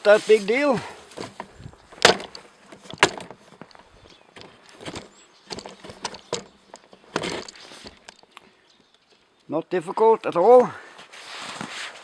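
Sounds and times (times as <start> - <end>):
handling noise: 0.0 - 9.0
sharp knocks and clicks: 1.2 - 8.4.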